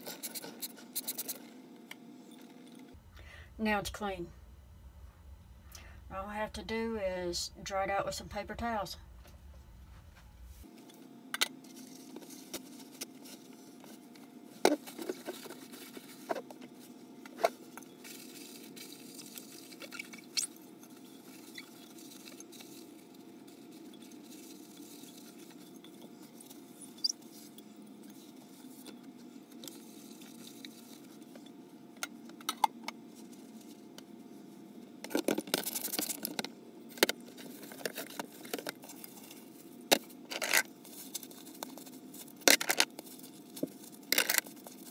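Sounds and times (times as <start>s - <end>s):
paper towels wiping a pot: 11.8s - 31.5s.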